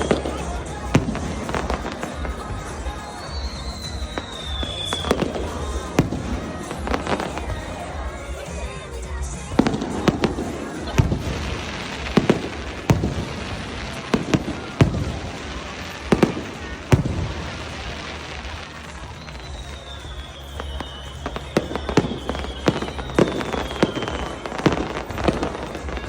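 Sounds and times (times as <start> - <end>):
fireworks booming: 0.0 - 26.0
high descending whistle: 1.6 - 7.7, 18.8 - 25.0.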